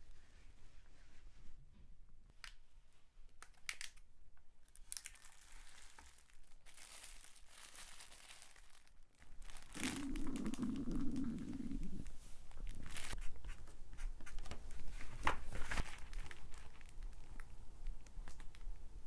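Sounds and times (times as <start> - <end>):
light crinkling rustles: 4.7 - 18.9
stomach growl: 9.5 - 13.0.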